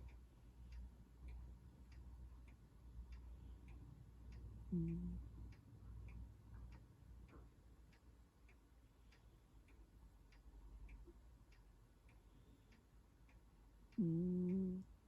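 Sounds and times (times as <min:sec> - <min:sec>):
faint even ticking: 0:00.0 - 0:15.0.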